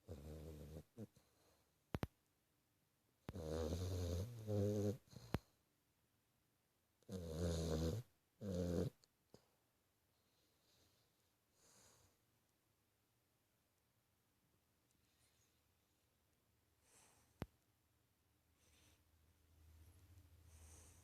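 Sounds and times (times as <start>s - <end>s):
puppy snoring: 0.0s - 1.3s, 3.2s - 5.5s, 7.0s - 9.0s.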